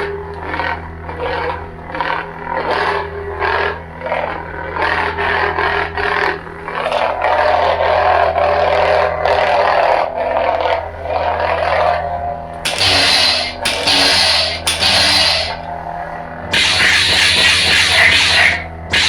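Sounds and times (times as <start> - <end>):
lightsaber hum: 0.0 - 19.0
lightsaber swing swooshes: 16.5 - 19.0.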